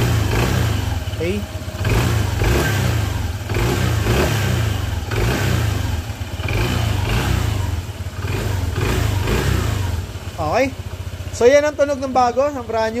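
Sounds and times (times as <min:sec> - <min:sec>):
scooter engine revving: 0:00.0 - 0:13.0.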